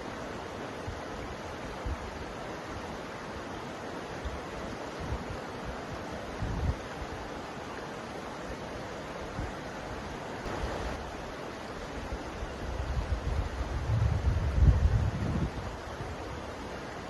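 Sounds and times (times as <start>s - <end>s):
river water rushing: 0.0s - 17.0s
wind rumble on microphone: 4.2s - 7.2s, 12.1s - 16.5s.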